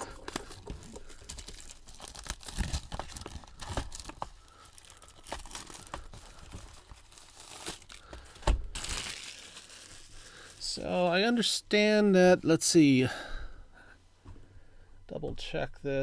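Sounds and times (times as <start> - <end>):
plastic wrap tearing and crinkling: 0.0 - 11.0.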